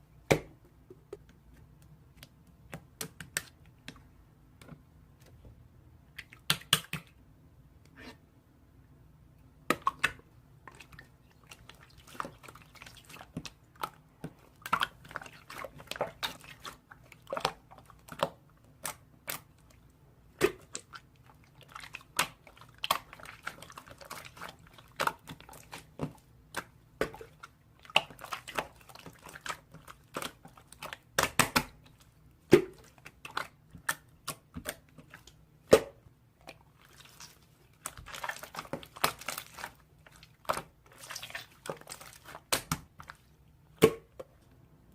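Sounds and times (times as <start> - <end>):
slime squished by hand: 20.4 - 44.0.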